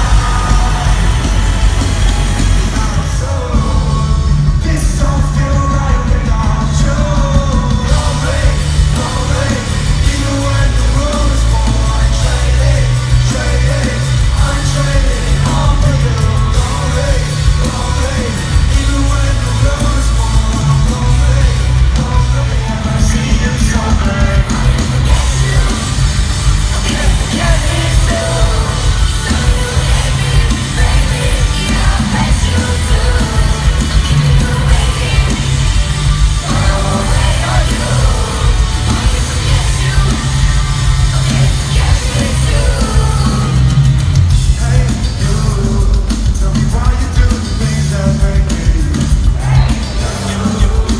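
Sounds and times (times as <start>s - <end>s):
person singing and yelling: 0.0s - 43.8s, 44.5s - 50.9s
heavy sustained bass: 0.0s - 45.8s
live rock band playing: 0.0s - 50.9s.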